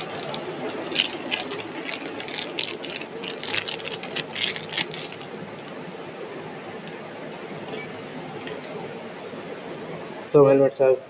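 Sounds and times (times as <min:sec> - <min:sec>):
packaging rustling and crinkling: 0:00.0 - 0:05.8
low room hum: 0:00.0 - 0:11.0.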